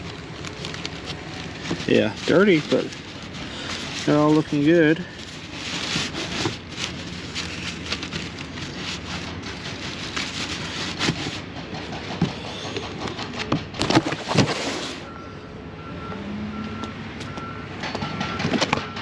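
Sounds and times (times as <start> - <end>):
rustling and knocking of boxes: 0.0 - 15.1.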